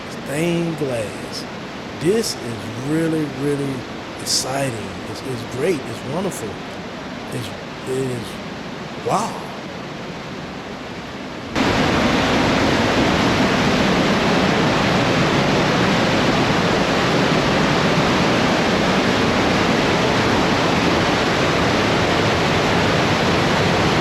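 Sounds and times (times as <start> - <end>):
whitewater rushing through gorge: 0.0 - 10.1, 11.6 - 24.0.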